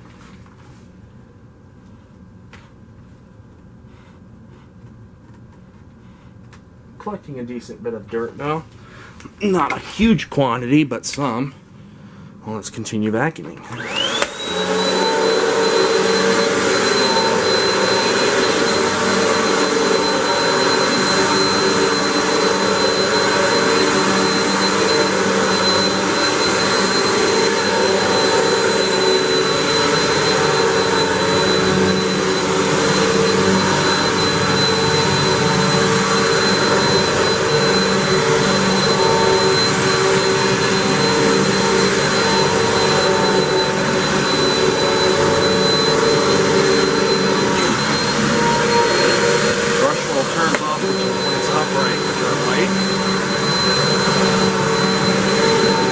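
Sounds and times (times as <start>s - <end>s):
vacuum cleaner running: 13.5s - 55.9s.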